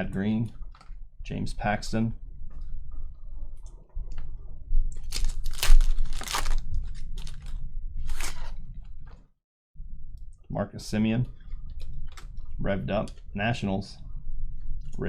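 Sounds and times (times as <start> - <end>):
foil wrapper crinkling and tearing: 5.0 - 8.5.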